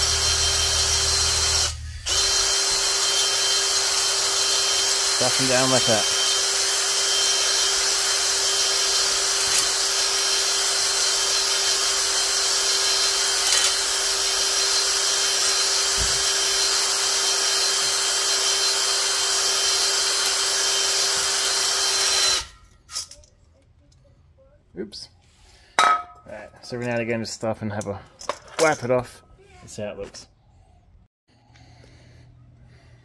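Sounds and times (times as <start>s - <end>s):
electric drill whining: 0.0s - 22.6s.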